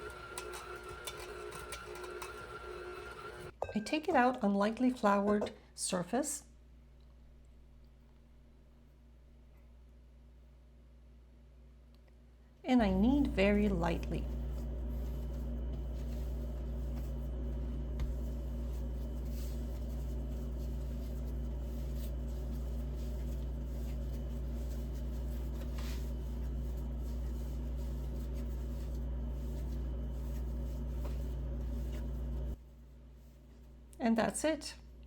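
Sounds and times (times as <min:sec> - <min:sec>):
low electrical hum: 0:00.0 - 0:35.0
hands kneading dough: 0:12.8 - 0:33.9.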